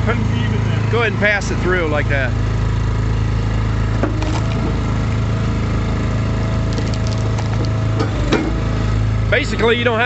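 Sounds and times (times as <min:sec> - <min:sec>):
log splitter engine humming: 0:00.0 - 0:10.0
wood cracking and splintering: 0:04.1 - 0:05.2, 0:06.6 - 0:08.2.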